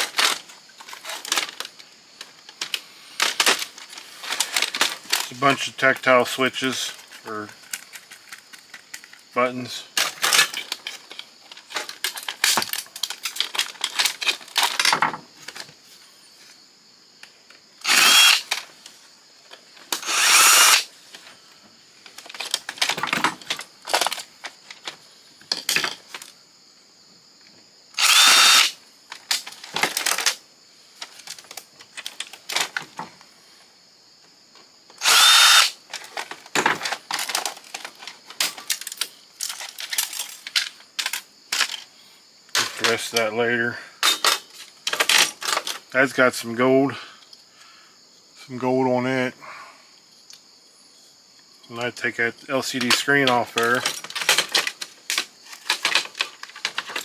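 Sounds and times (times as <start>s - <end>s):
plastic and metal parts clattering: 0.0s - 9.4s, 10.0s - 15.8s, 17.8s - 21.4s, 22.0s - 26.4s, 28.0s - 30.4s, 31.0s - 33.2s, 35.0s - 41.9s, 42.6s - 43.3s, 44.0s - 45.9s, 52.6s - 57.0s
cordless drill running: 17.8s - 18.5s, 20.0s - 20.8s, 28.0s - 28.8s, 35.0s - 35.8s.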